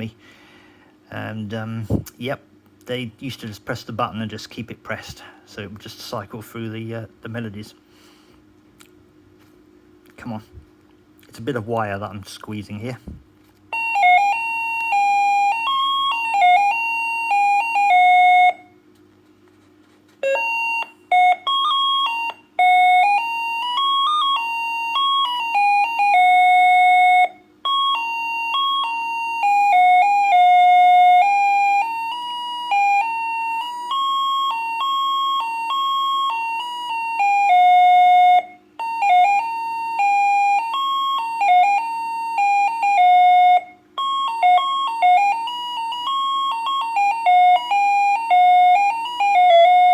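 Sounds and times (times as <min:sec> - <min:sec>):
steady low hum: 0:00.0 - 0:49.9
electronic doorbell beeping tunes: 0:13.7 - 0:18.8, 0:20.2 - 0:49.9.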